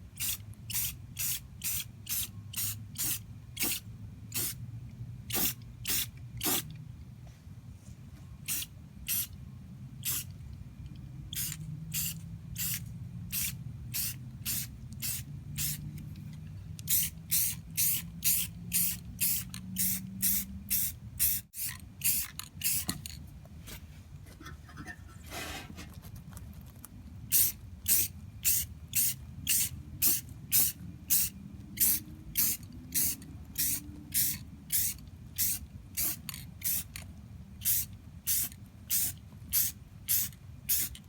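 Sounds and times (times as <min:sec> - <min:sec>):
low steady hum: 0:00.0 - 0:41.0
spray paint can hissing: 0:00.2 - 0:04.6, 0:05.3 - 0:06.7, 0:08.5 - 0:09.3, 0:10.0 - 0:10.3, 0:11.3 - 0:15.8, 0:16.8 - 0:22.9, 0:27.3 - 0:37.0, 0:37.6 - 0:41.0.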